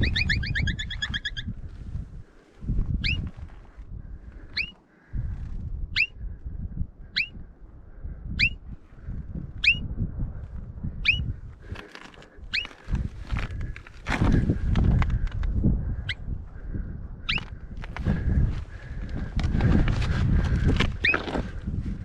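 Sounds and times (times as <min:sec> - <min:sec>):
animal high squeaks: 0:00.0 - 0:01.5, 0:03.0 - 0:03.2, 0:04.6 - 0:04.8
wind rumble on microphone: 0:00.0 - 0:22.0.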